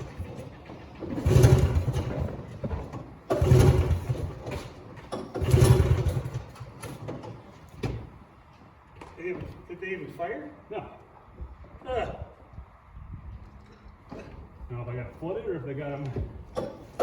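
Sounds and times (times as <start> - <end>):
engine turning over: 0.0 - 7.4
recoil starter pulls: 0.0 - 8.1, 16.4 - 17.0.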